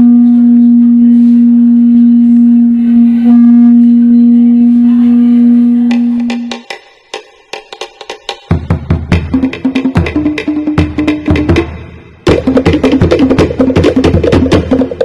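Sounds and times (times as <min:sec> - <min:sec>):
long horn-like note: 0:00.0 - 0:06.6
sharp percussion strikes: 0:05.8 - 0:15.0.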